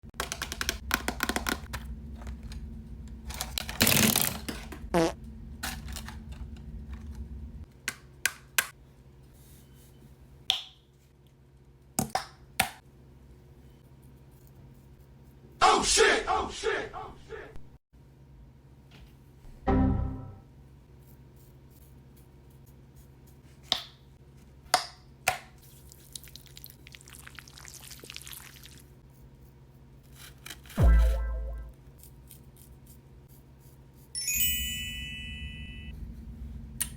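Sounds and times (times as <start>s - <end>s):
faint electrical hum: 0.2s - 36.9s
tone sliding downward: 30.8s - 31.8s.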